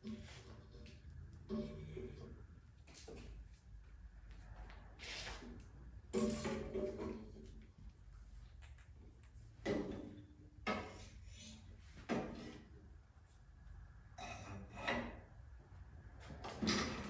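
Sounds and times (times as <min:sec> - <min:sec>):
metal cart knocks and scrapes: 0:06.1 - 0:07.4, 0:16.4 - 0:17.0.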